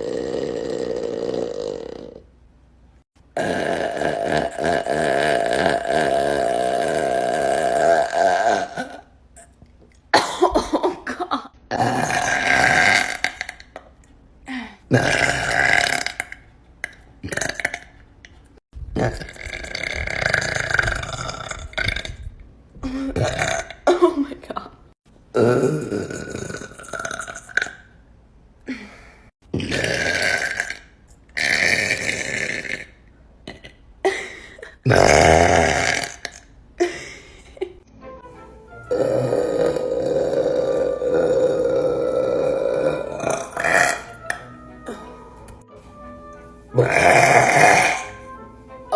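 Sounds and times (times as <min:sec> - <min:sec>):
woman burping: 0:03.4 - 0:09.5, 0:10.1 - 0:13.8, 0:18.9 - 0:22.2, 0:22.8 - 0:24.6, 0:31.4 - 0:37.8, 0:38.9 - 0:45.6, 0:46.8 - 0:48.2.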